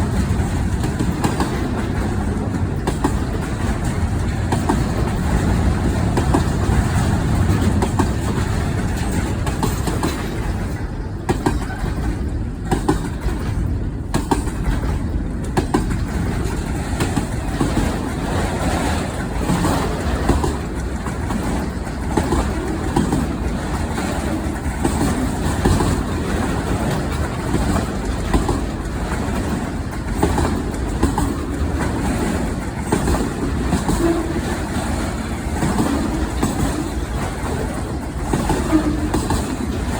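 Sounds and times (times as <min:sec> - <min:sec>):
freight train rumbling past: 0:00.0 - 0:39.9
wheels clicking over rail joints: 0:00.0 - 0:39.9.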